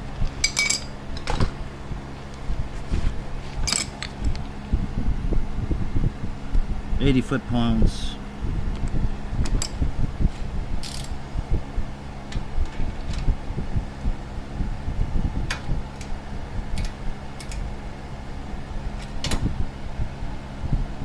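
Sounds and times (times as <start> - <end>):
electric fan humming: 0.0 - 21.0.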